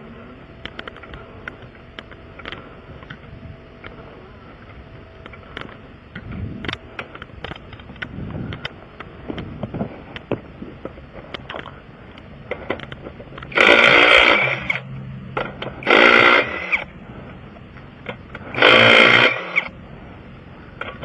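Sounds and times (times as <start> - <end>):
impact wrench bursts: 13.5 - 16.9, 18.1 - 19.8.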